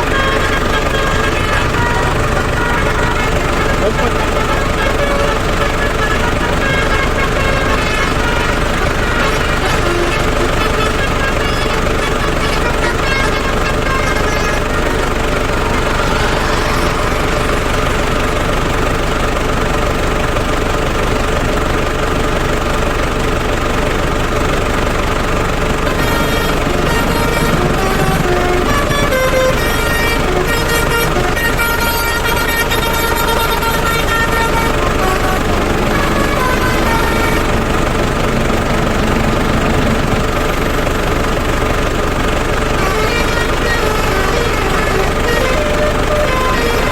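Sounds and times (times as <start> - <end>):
truck engine running: 0.0 - 46.9
faint high tones: 13.7 - 19.4.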